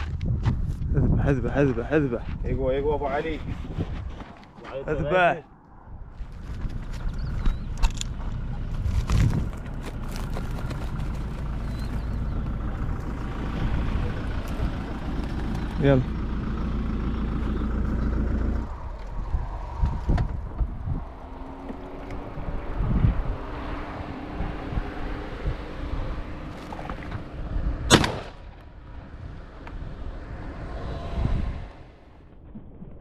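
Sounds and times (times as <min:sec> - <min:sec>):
vehicle engine rumbling: 0:00.0 - 0:33.0
vehicle rattling: 0:06.1 - 0:29.6
sharp loud bang: 0:27.9 - 0:28.4.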